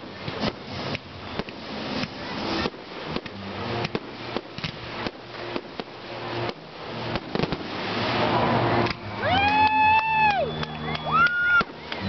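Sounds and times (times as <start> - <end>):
hiss: 0.0 - 8.8
fireworks crackling and popping: 0.0 - 12.0.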